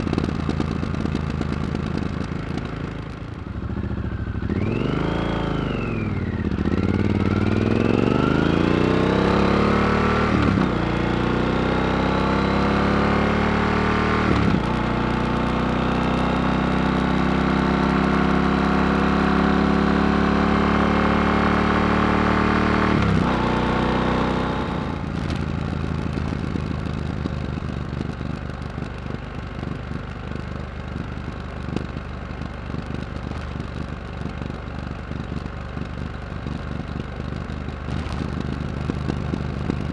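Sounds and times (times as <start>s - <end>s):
motorcycle engine accelerating: 0.0s - 39.9s
exhaust crackling on overrun: 24.6s - 39.9s.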